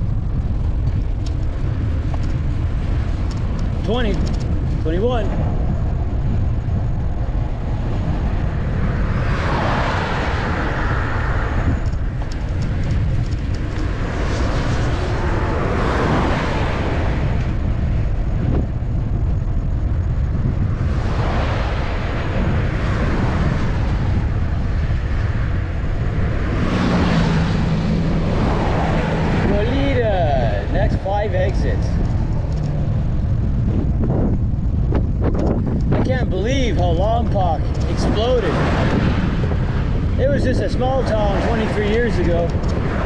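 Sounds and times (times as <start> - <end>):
vehicles passing on highway: 0.0 - 43.0
wind buffeting microphone: 0.0 - 43.0.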